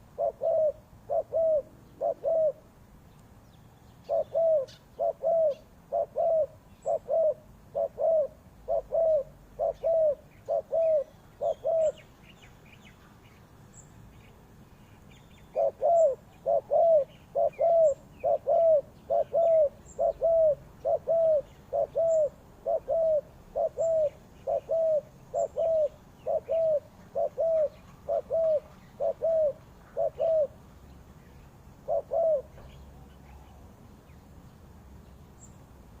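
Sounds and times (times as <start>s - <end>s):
dove cooing: 0.0s - 2.6s, 4.0s - 12.0s, 15.5s - 30.6s, 31.8s - 32.8s
small birds chirping: 0.0s - 36.0s.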